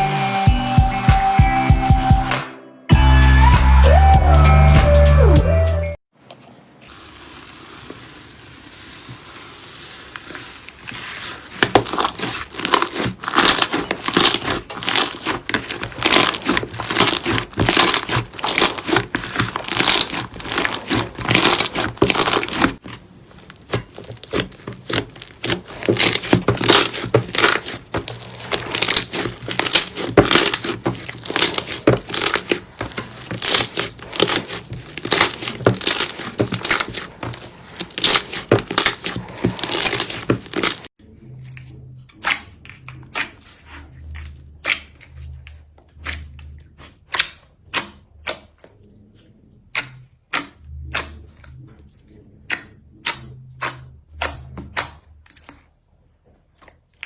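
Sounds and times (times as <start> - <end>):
hands squeezing slime: 8.4 - 40.9.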